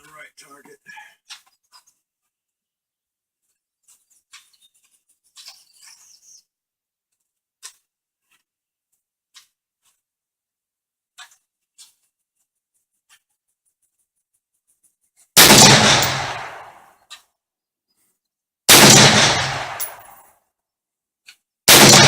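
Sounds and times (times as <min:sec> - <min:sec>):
rifle shots: 0:15.4 - 0:16.8, 0:18.7 - 0:20.2, 0:21.7 - 0:22.0.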